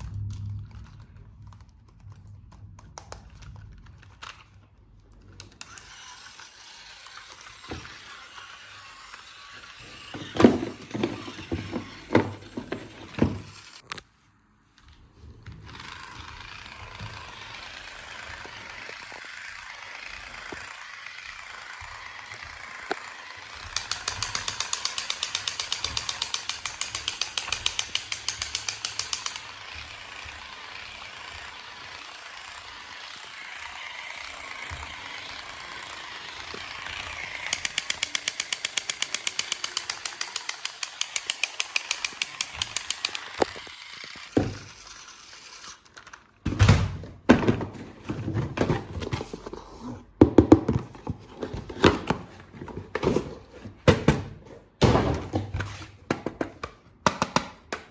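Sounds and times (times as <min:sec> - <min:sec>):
toy mechanism whirring: 0:02.9 - 0:14.0, 0:14.9 - 0:46.6
fast clicking rattle: 0:23.7 - 0:29.7, 0:37.0 - 0:44.3.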